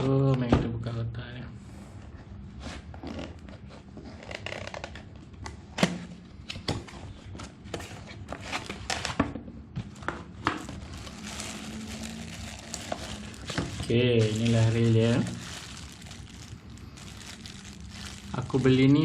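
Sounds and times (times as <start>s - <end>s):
packaging rustling and scraping: 6.9s - 9.2s, 9.8s - 19.0s.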